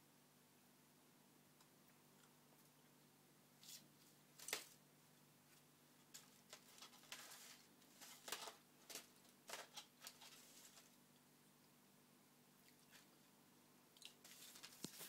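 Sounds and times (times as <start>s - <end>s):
cat rummaging in cupboard: 6.2s - 10.9s.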